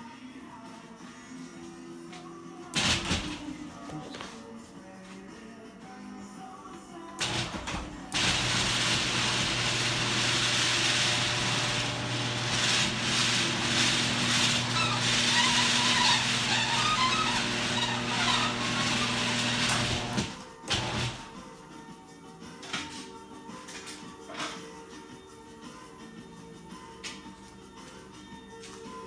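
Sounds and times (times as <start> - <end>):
door travelling along tracks: 2.8 - 3.5, 7.2 - 21.3
garage door opener motor humming: 2.8 - 3.6, 7.2 - 21.4.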